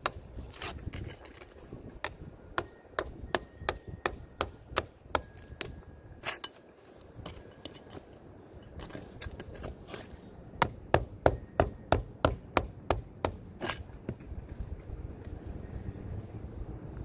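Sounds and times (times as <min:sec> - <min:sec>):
hammer strikes: 0:10.6 - 0:14.2.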